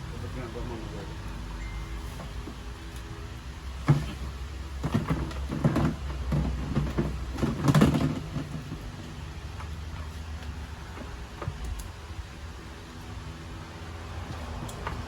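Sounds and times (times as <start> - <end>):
hard parts knocking and clattering: 3.8 - 8.9.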